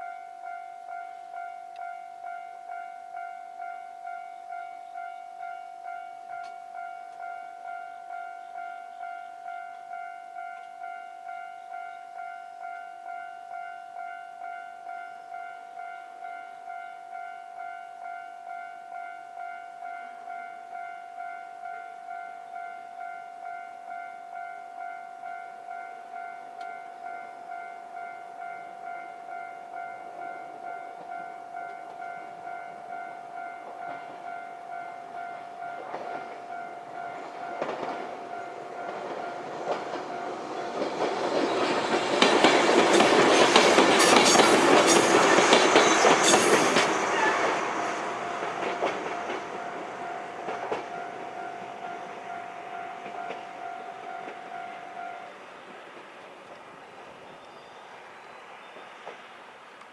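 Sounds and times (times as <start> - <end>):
level crossing warning bell: 0.0 - 56.0
train wheels clattering: 35.8 - 57.7.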